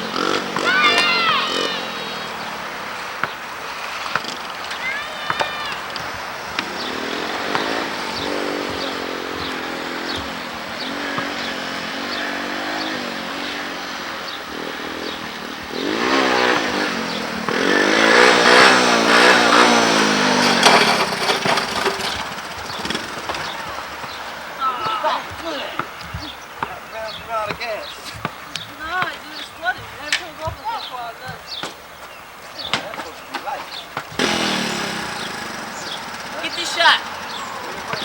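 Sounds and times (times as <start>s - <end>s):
small engine running and revving: 0.0s - 24.5s, 34.1s - 38.0s.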